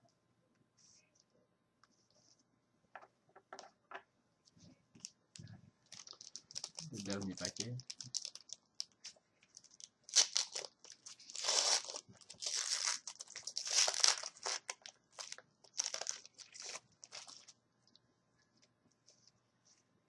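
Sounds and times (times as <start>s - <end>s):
wrapper tearing and crinkling: 5.9s - 17.5s.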